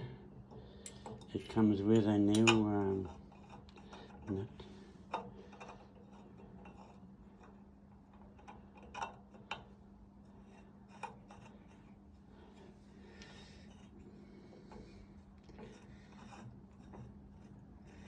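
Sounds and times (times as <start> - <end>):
steady low hum: 0.0 - 18.0
light metallic clicks and taps: 2.0 - 3.0
faint metal scraping: 10.3 - 18.0.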